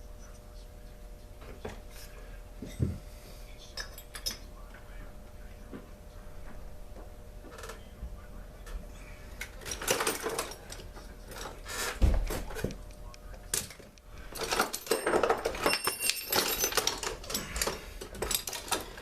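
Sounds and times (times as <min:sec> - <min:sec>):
metal tools clinking and rattling: 0:03.7 - 0:04.6, 0:09.4 - 0:12.7, 0:13.5 - 0:19.0.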